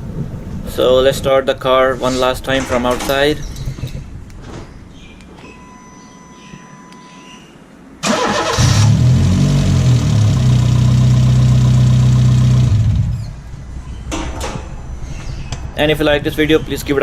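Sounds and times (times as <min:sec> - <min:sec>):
car engine running loudly: 0:08.6 - 0:13.2.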